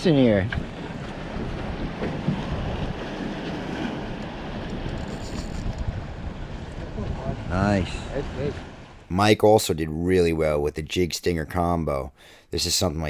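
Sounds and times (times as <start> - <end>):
wind rumbling on microphone: 0.0 - 9.1
water washing around boat: 0.0 - 10.5.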